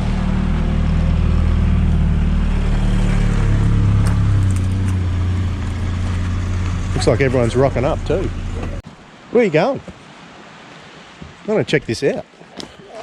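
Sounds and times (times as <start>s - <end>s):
car engine running: 0.0s - 8.8s
road noise: 0.0s - 13.0s.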